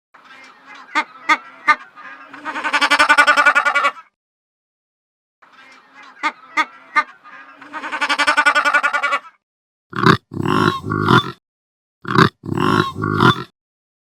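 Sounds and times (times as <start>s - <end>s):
animal grunts: 9.9s - 11.4s, 12.0s - 13.5s
sheep bleating: 10.0s - 11.4s, 12.0s - 13.5s.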